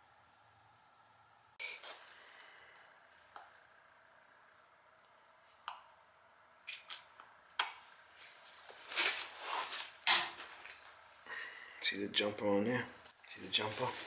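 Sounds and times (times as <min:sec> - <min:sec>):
rustling and scraping of parts: 0:01.6 - 0:03.4, 0:07.8 - 0:11.4, 0:12.9 - 0:14.0.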